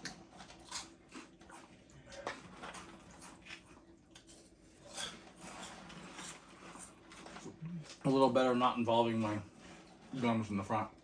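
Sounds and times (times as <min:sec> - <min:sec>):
people chewing crunchy snacks: 0:00.0 - 0:08.1.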